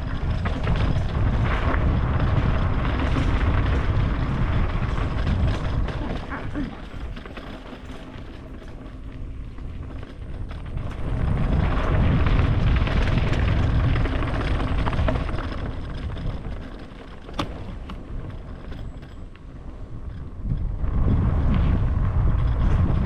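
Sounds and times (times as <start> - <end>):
vehicle rumble: 0.0 - 23.0
wind noise on microphone: 0.0 - 23.0.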